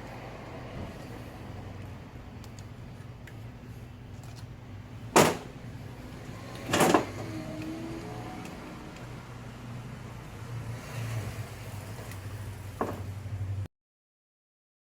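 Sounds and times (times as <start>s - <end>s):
loud clunks: 5.1s - 5.6s.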